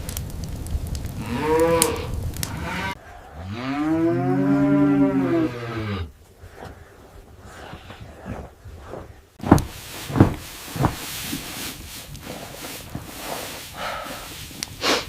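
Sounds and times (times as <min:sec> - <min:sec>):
crackling clicking background noise: 0:00.0 - 0:03.0, 0:06.1 - 0:15.0
cattle mooing: 0:01.2 - 0:06.1.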